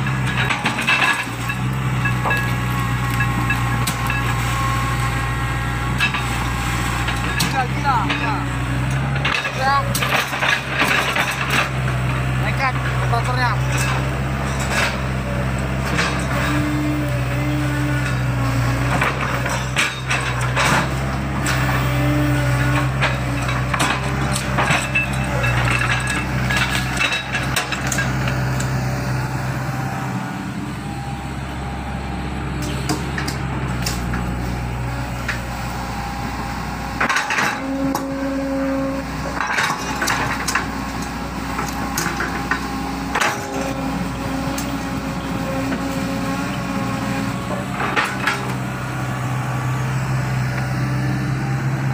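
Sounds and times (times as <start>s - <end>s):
metallic clanks and knocks: 0.0s - 4.4s, 5.9s - 15.2s, 17.9s - 21.6s, 22.6s - 28.8s, 32.6s - 34.6s, 36.9s - 38.1s, 39.2s - 43.9s, 47.4s - 48.6s
diesel engine running: 0.0s - 51.9s.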